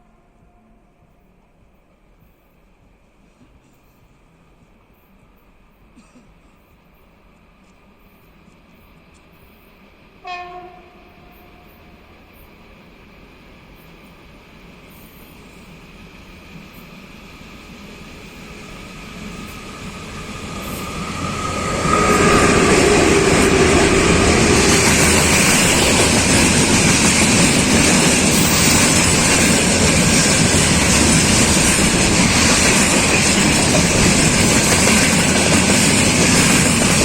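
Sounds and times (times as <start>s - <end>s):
freight train passing: 6.8s - 37.0s
wheels rolling on rail: 11.2s - 37.0s.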